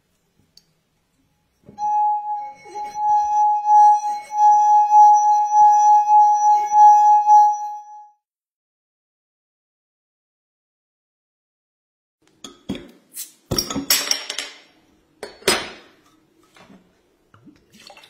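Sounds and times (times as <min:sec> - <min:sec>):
singing glass sustained note: 0:01.6 - 0:08.2.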